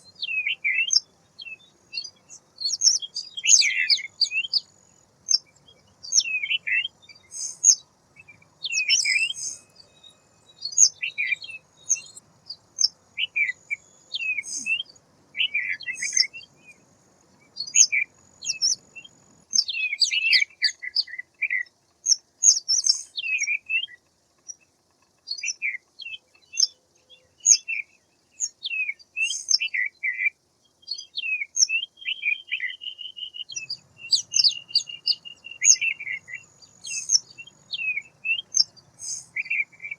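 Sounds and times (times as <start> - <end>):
bird chirping and trilling: 0.0 - 4.7, 5.3 - 16.8, 17.5 - 24.0, 30.9 - 39.9.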